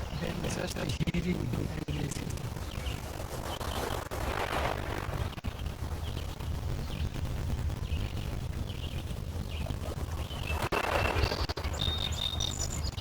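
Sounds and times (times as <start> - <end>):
low rumble: 0.0 - 13.0
faint bird chirps: 5.2 - 13.0.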